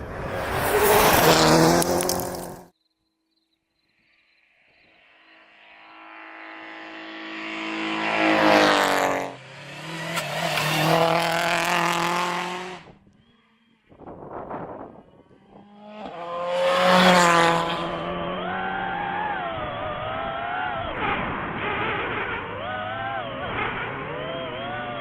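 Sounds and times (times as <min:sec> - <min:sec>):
car passing by: 0:00.0 - 0:02.7, 0:05.1 - 0:12.9, 0:15.6 - 0:18.9
rally car engines revving: 0:00.0 - 0:02.7, 0:05.9 - 0:25.0.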